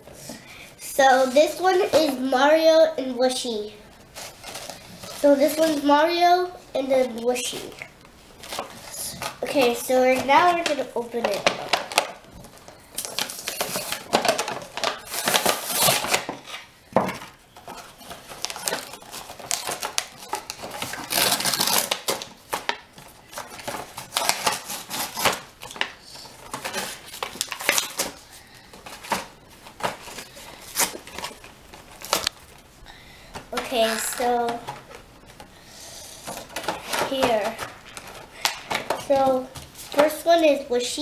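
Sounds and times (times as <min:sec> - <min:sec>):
packaging crinkling and tearing: 0:03.9 - 0:05.9, 0:08.0 - 0:32.7, 0:36.2 - 0:40.1.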